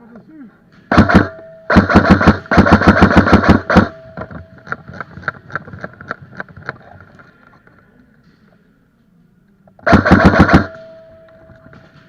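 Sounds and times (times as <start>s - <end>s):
airsoft gun firing: 0.9s - 4.4s, 9.8s - 11.0s.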